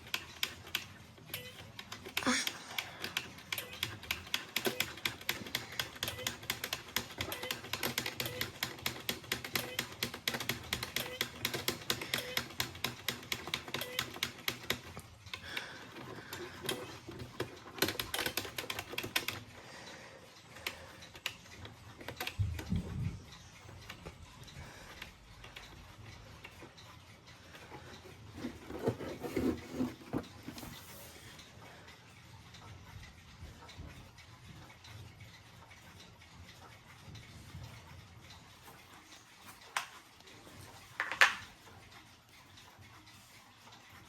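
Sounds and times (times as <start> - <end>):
clock mechanism clicking: 0.0 - 44.0.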